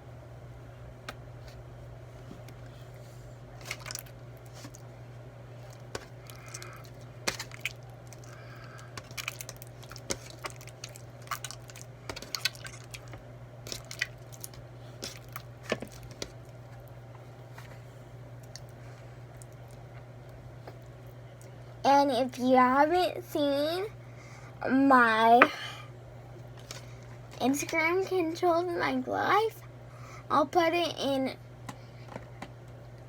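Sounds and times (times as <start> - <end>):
steady low hum: 0.0 - 33.0
slime clicking and crackling: 5.8 - 16.4.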